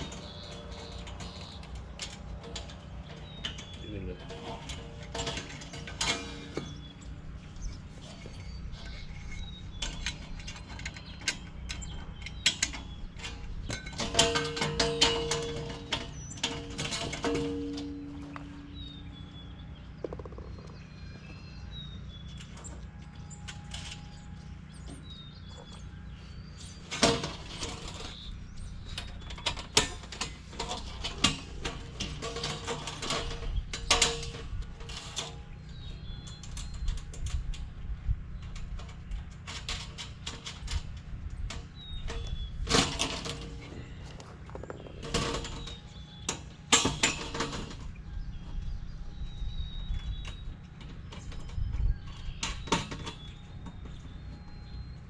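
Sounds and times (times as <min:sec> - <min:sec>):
metal panels clanking: 0:00.0 - 0:55.0
faint bird chirps: 0:17.9 - 0:26.9, 0:48.0 - 0:55.0.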